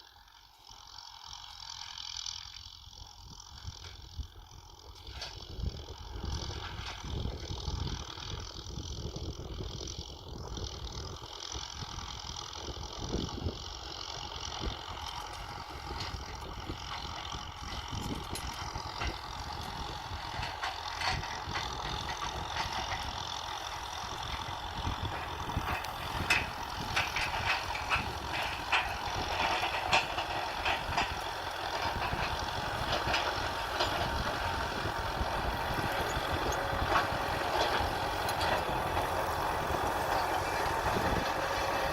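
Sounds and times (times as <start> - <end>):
tractor diesel engine running: 0.0 - 41.9
rattling clicks and knocks: 14.6 - 41.9.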